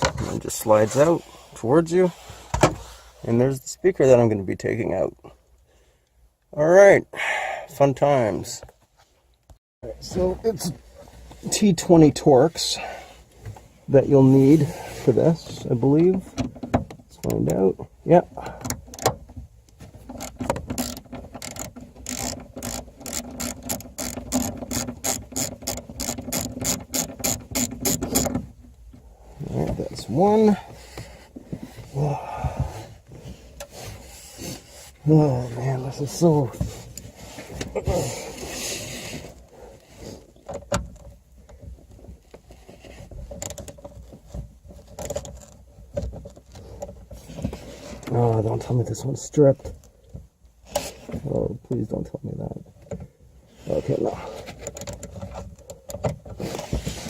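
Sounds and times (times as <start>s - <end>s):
ratcheting driver clicking: 20.1s - 28.4s.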